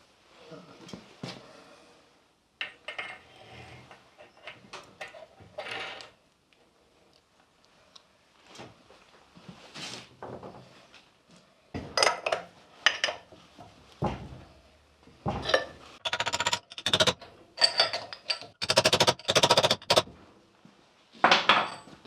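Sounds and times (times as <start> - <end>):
rapid metallic clicking: 16.0 - 17.2, 18.5 - 20.1
metal clinks of hand tools: 16.0 - 20.1.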